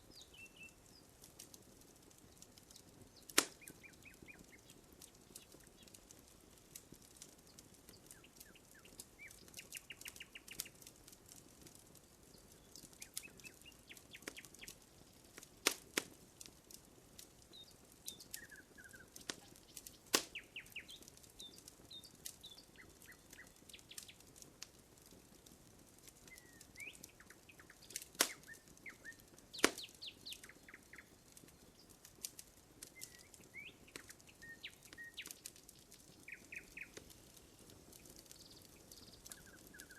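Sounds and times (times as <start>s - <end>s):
birds singing: 0.0s - 1.1s, 2.3s - 6.0s, 7.9s - 10.9s, 12.2s - 14.8s, 17.5s - 24.2s, 26.2s - 31.9s, 32.8s - 39.9s
campfire wood crackling: 0.0s - 39.9s.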